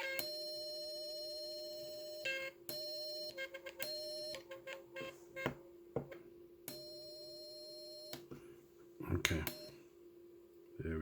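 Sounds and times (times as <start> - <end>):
morse code beeps: 0.0 - 5.6, 9.4 - 9.8
faint steady hum: 0.0 - 11.0.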